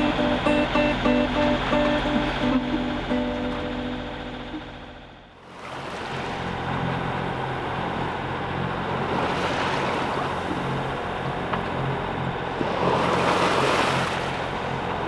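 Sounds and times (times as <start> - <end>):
background music: 0.0 - 5.2
low steady hum: 0.0 - 15.0
sea water rushing past hull: 0.0 - 15.0.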